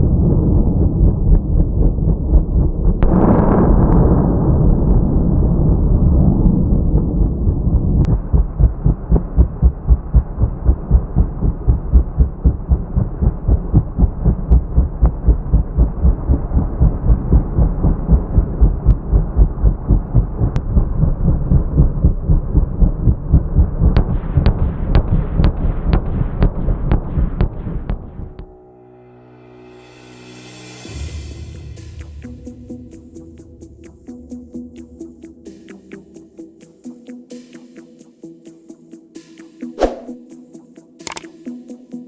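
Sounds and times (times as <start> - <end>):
low rumble: 0.0 - 28.5.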